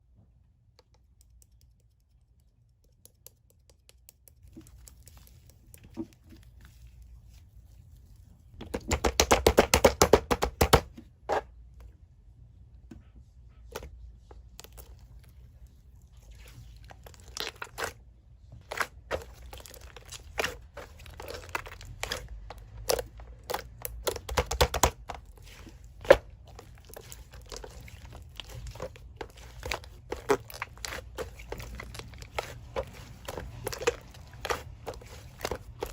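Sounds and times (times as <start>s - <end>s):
slime squishing and crackling: 14.5s - 35.9s.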